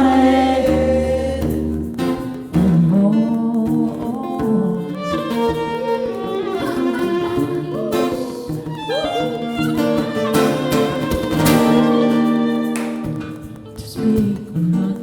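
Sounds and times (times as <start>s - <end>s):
guitar accompaniment: 0.0s - 15.0s
bowed violin melody: 4.6s - 14.4s.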